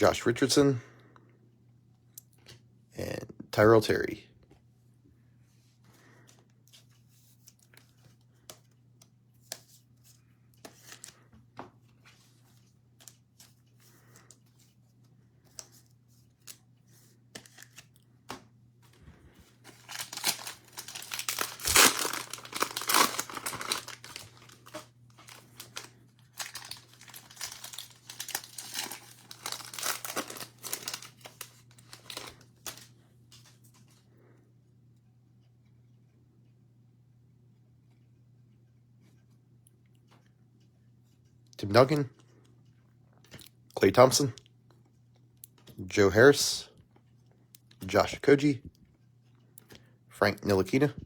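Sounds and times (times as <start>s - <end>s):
trading cards being handled: 6.3s - 33.9s
cellophane wrapper crinkling and tearing: 19.5s - 32.9s.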